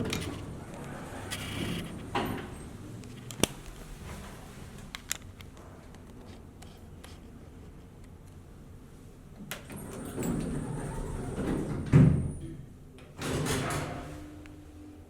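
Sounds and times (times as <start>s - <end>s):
low machinery hum: 5.5s - 15.0s.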